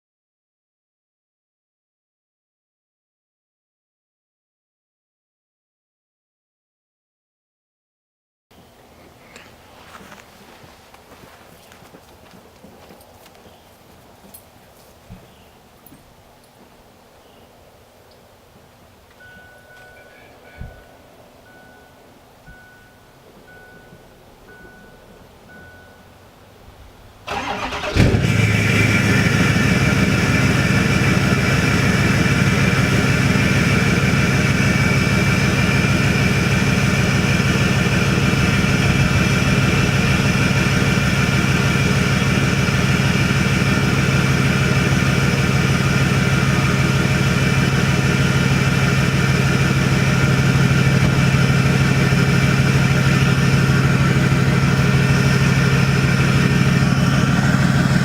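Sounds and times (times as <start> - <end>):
diesel engine starting and idling: 27.1 - 58.0.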